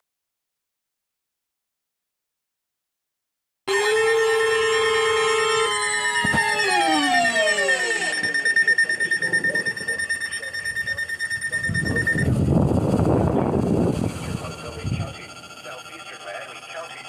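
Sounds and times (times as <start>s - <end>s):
buzzing alarm tone sliding down: 3.7s - 17.0s
high pulsing tone: 3.7s - 17.0s.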